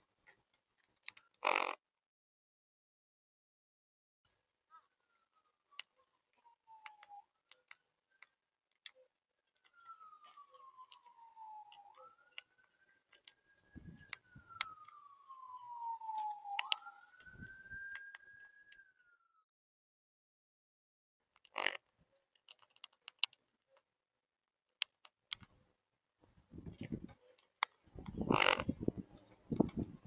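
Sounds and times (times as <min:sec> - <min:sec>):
siren wailing: 0:05.0 - 0:08.3, 0:08.9 - 0:19.5
sharp clicks: 0:14.0 - 0:15.0, 0:16.1 - 0:17.3.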